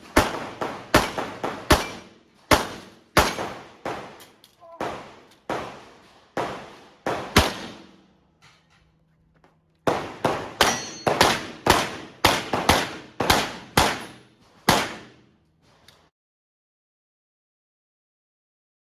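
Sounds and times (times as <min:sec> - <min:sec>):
pistol shots: 0:00.0 - 0:08.1, 0:09.8 - 0:15.3.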